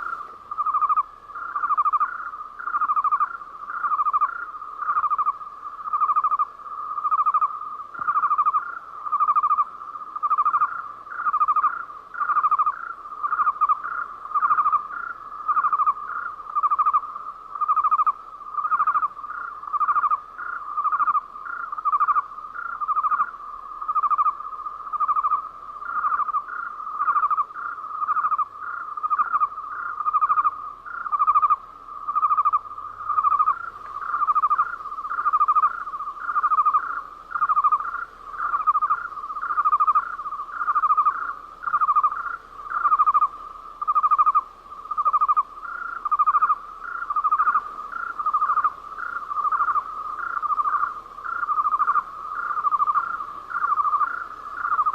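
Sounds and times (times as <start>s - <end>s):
cricket chirping: 0.0s - 54.9s.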